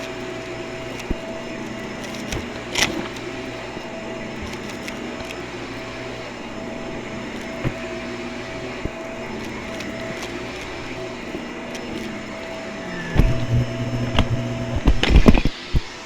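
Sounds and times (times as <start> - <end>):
vacuum cleaner running: 0.0 - 16.0.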